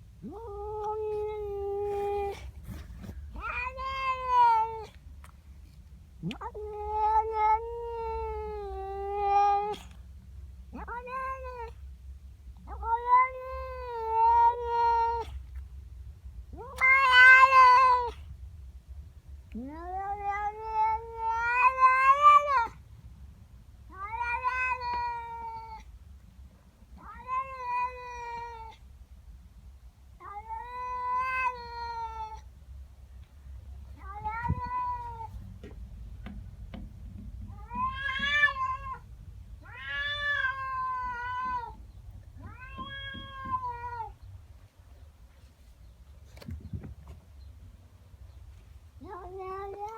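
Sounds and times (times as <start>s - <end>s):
cat yowling: 3.3s - 5.0s, 6.2s - 9.9s, 10.7s - 11.7s, 12.7s - 15.4s, 16.6s - 18.2s, 19.6s - 22.8s, 23.9s - 25.8s, 27.0s - 28.8s, 30.2s - 32.4s, 34.0s - 35.4s, 37.5s - 41.8s, 42.4s - 44.2s, 49.0s - 49.9s.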